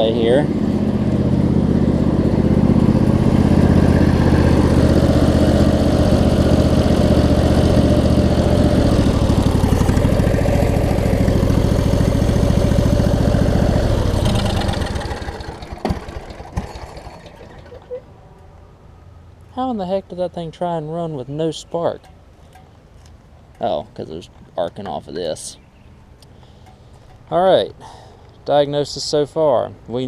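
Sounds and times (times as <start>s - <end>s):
lawn tractor engine running: 0.0s - 18.1s.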